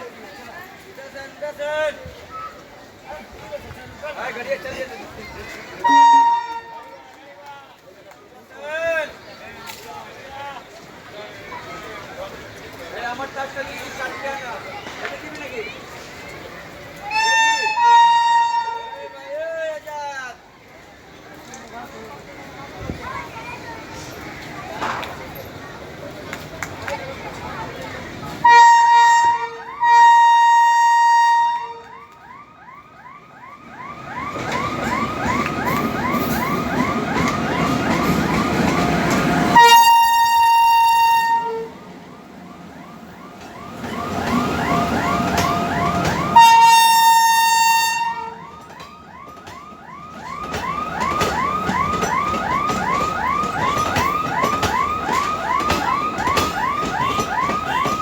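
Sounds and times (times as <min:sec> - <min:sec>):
train horn blasts: 0:05.8 - 0:07.1, 0:17.1 - 0:19.2, 0:28.4 - 0:32.2, 0:39.5 - 0:41.9, 0:44.3 - 0:48.5.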